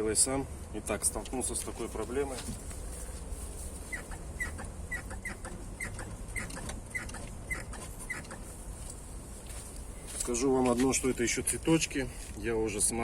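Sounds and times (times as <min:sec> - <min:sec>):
car suspension squeaking: 0:03.8 - 0:08.6.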